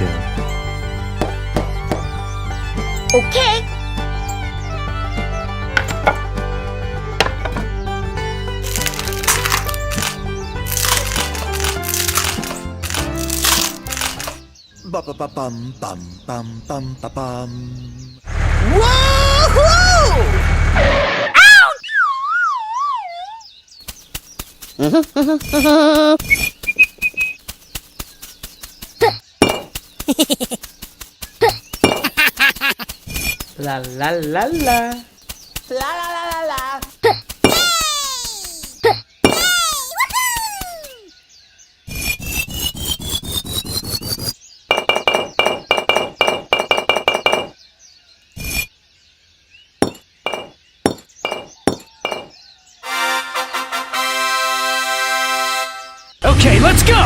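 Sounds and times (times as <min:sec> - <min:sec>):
ringing clinking taps: 0:44.7 - 0:47.5, 0:49.8 - 0:52.3.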